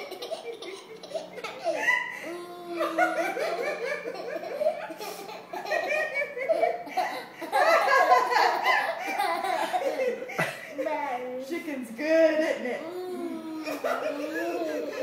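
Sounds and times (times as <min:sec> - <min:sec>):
young child laughing: 0:00.0 - 0:10.6.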